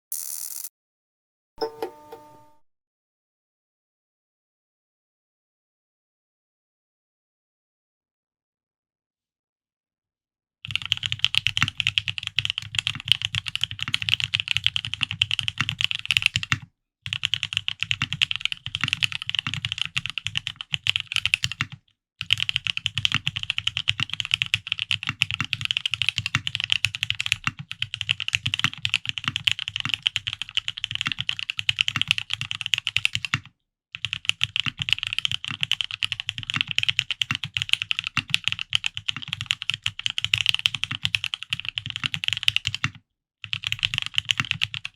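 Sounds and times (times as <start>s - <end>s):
fast mechanical keyboard typing: 10.7s - 44.9s.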